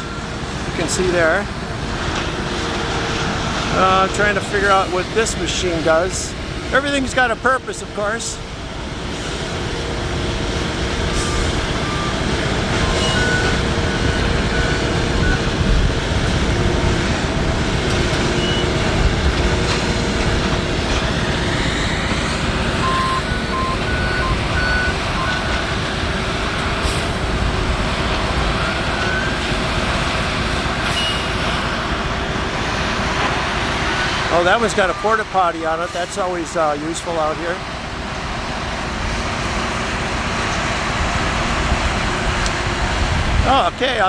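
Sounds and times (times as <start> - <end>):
machine engines droning: 0.0 - 44.0
electronic warning beeps: 11.2 - 15.8, 18.2 - 19.2, 21.2 - 26.0, 28.4 - 29.7, 33.7 - 36.2.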